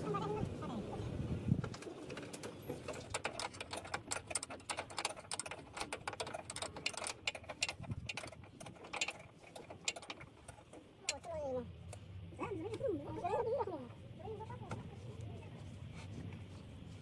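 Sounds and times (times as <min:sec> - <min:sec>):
hand tools clicking on metal: 0:01.7 - 0:12.0.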